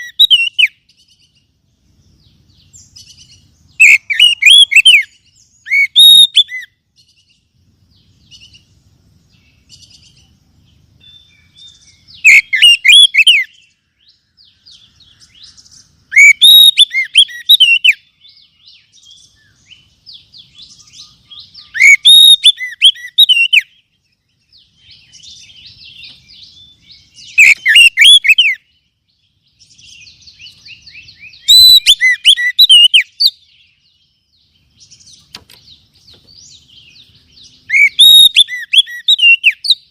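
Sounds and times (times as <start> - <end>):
bird singing whistled notes: 0.0 - 39.9
quiet bird twittering: 0.0 - 39.9.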